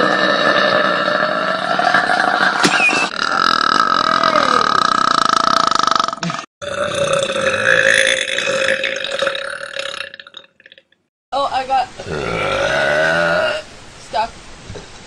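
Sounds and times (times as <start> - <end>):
woman burping: 3.1 - 10.4, 12.0 - 13.6.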